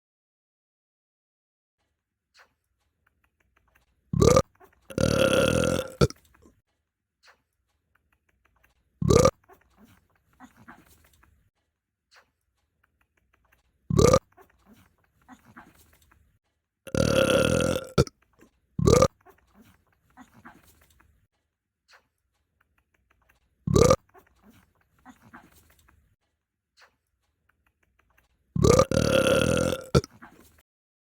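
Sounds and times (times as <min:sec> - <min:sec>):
person burping: 0:04.2 - 0:06.1, 0:09.0 - 0:09.4, 0:13.9 - 0:14.3, 0:16.9 - 0:18.1, 0:18.8 - 0:19.2, 0:23.7 - 0:24.0, 0:28.6 - 0:30.2.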